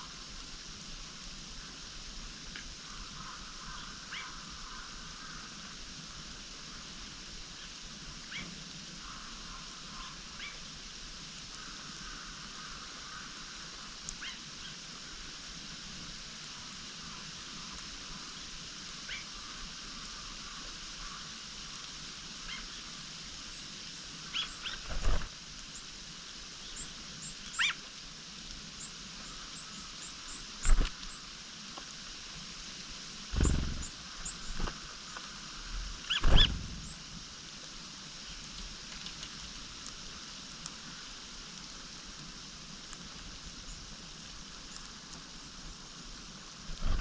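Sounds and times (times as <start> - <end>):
songbirds chirping: 1.2 - 47.0.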